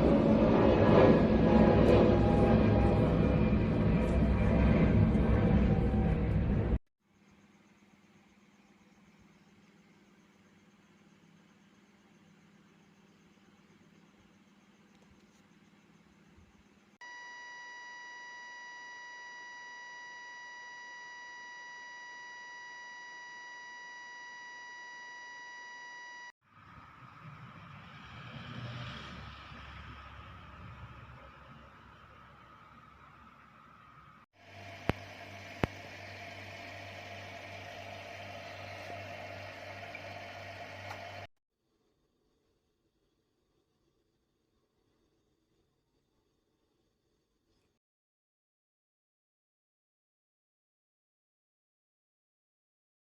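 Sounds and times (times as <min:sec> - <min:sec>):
steady electronic beep tone: 0:17.0 - 0:26.3.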